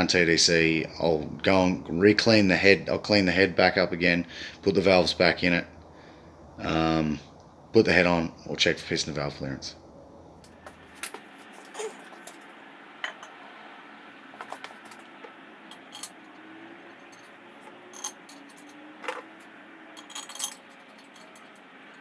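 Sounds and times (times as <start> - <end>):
faint steady hum: 0.0 - 22.0
metallic clinks of tools: 11.7 - 12.4, 15.7 - 16.2, 17.1 - 21.7.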